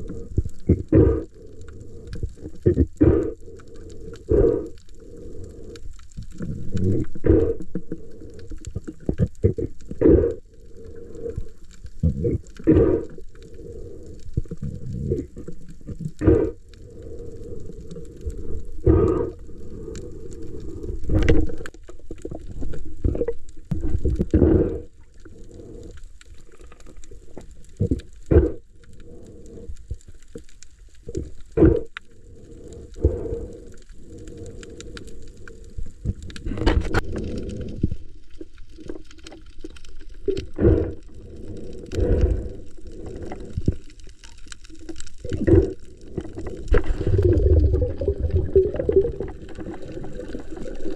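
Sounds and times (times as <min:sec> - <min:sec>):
muffled underwater water sound: 0:00.0 - 0:50.9
bubbling bursts: 0:44.8 - 0:50.9.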